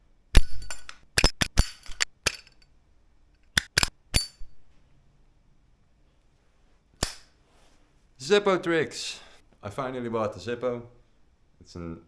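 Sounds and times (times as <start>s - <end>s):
lighter lid clinking: 0.4s - 2.6s, 3.6s - 4.6s, 7.0s - 7.3s.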